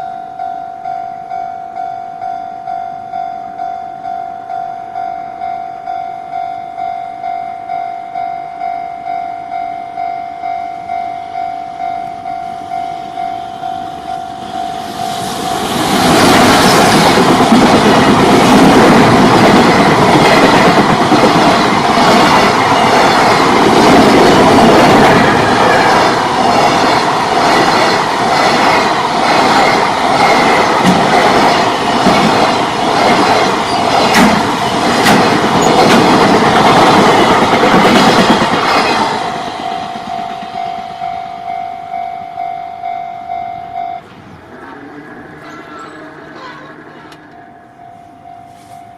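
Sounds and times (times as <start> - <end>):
level-crossing warning bell ringing: 0.0 - 44.1, 45.3 - 48.9
freight train rumbling past: 8.2 - 48.9
wheels clacking over rail joints: 15.6 - 41.0.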